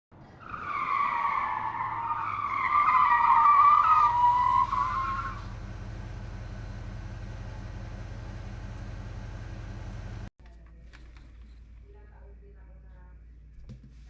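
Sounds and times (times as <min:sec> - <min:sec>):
car tyres squealing: 0:00.2 - 0:10.3.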